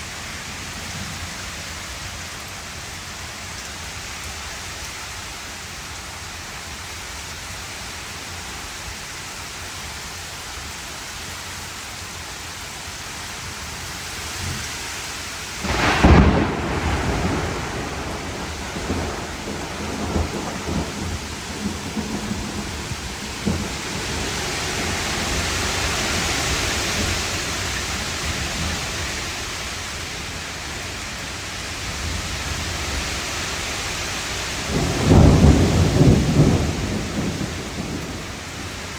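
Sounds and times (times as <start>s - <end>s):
steady rain: 0.0s - 38.9s
thunderclap and rumbling thunder: 15.6s - 31.0s, 34.4s - 38.9s.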